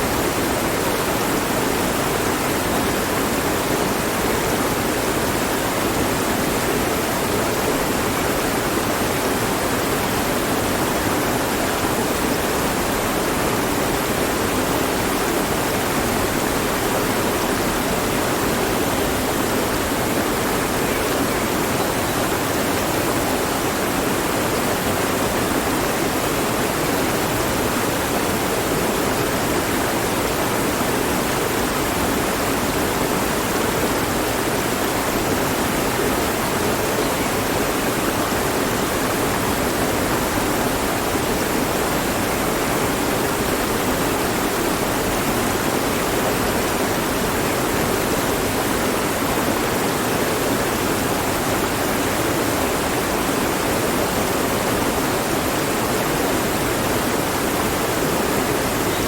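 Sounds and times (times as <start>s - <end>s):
stream rushing over rocks: 0.0s - 59.0s.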